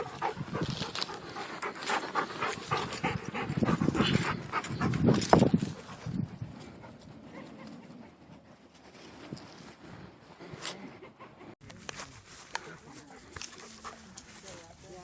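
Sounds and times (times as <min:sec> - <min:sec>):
dogs panting: 0:00.0 - 0:08.8, 0:10.7 - 0:11.6, 0:12.7 - 0:14.5.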